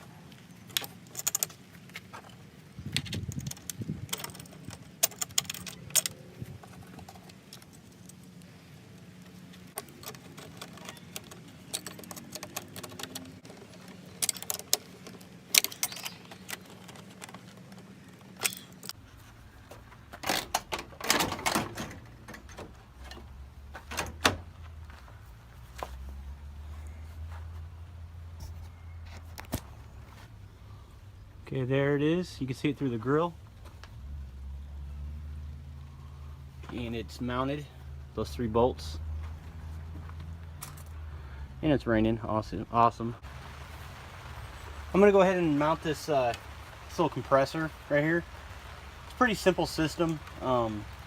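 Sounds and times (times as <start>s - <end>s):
metallic clinks of bolts and tools: 3.0s - 6.2s, 9.8s - 13.3s, 13.9s - 17.8s, 18.4s - 19.0s.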